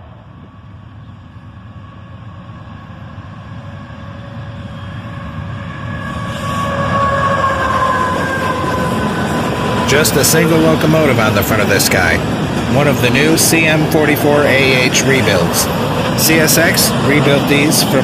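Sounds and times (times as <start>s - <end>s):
freight train rumble: 0.0s - 18.0s.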